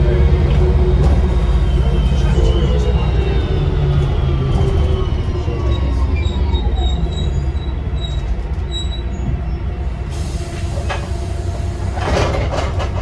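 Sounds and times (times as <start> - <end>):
bus diesel engine drone: 0.0 - 13.0.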